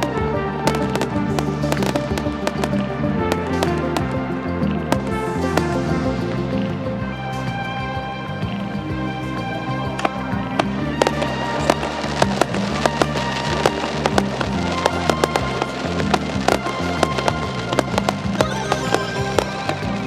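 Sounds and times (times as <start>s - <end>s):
music playing: 0.0s - 20.0s
fireworks bangs and crackles: 8.4s - 20.0s.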